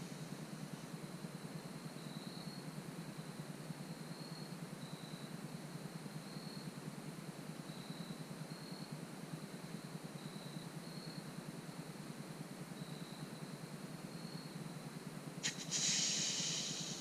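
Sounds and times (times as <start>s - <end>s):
insect chirps: 0.0s - 6.8s, 7.5s - 17.0s
insect high-pitched tone: 15.4s - 17.0s
low hiss: 15.4s - 17.0s.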